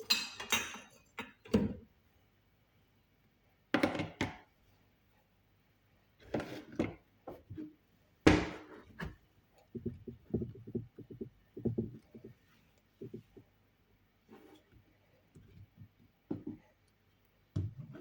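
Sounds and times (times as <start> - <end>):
utensils and dishes clattering: 0.0 - 1.4.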